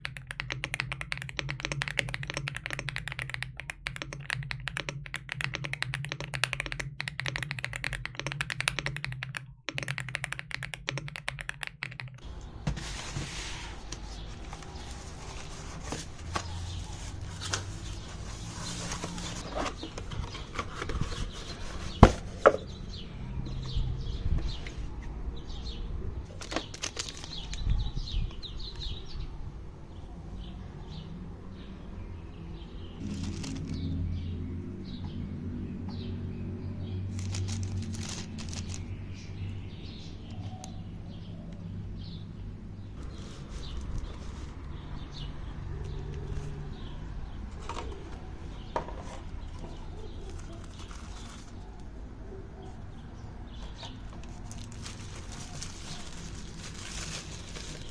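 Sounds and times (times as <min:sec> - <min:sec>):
mechanical keyboard typing: 0:00.0 - 0:12.3, 0:37.2 - 0:38.9
packaging rustling: 0:26.3 - 0:27.6, 0:33.0 - 0:33.9, 0:37.1 - 0:39.0, 0:50.3 - 0:51.6, 0:54.1 - 0:57.9.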